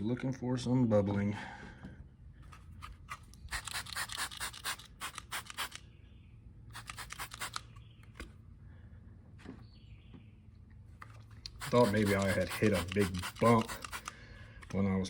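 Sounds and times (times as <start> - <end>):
rasping scrubbing on a tire: 11.5 - 14.0.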